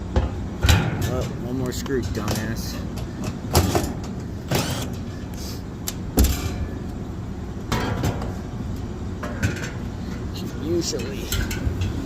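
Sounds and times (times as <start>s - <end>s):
steady low hum: 0.0s - 12.0s
metal tools clanking: 0.7s - 5.1s, 9.2s - 12.0s.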